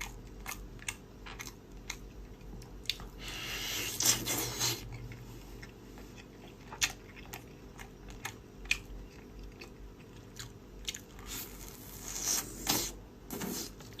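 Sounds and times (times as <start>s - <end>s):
crunchy bites and chewing: 0.0s - 3.2s.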